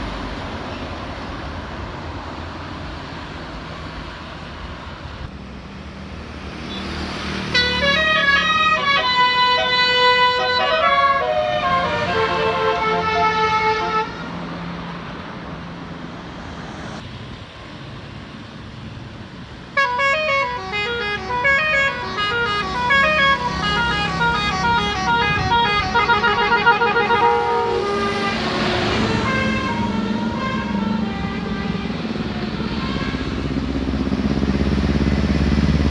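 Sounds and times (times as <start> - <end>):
bus engine rumble: 0.0 - 35.9
air horns playing a melody: 7.5 - 14.4, 19.8 - 33.5.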